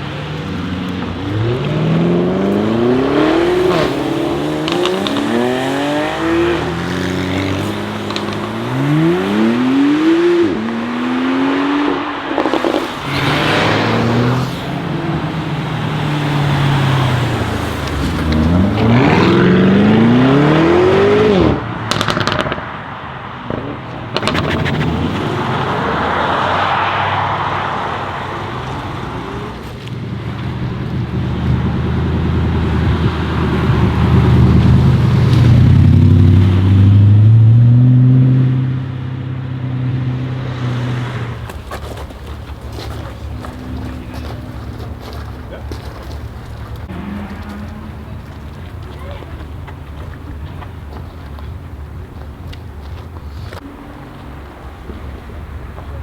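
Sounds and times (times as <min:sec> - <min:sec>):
exhaust pops: 0:00.0 - 0:10.9, 0:11.9 - 0:19.4, 0:21.4 - 0:22.8, 0:23.4 - 0:26.8, 0:28.1 - 0:37.1, 0:41.0 - 0:53.7
car engine accelerating hard: 0:00.0 - 0:56.0.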